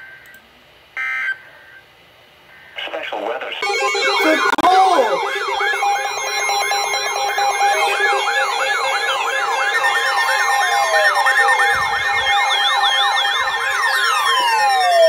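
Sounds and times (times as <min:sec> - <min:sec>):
electronic alert sirens warbling: 0:03.6 - 0:15.0
steady beeping tones: 0:03.6 - 0:15.0.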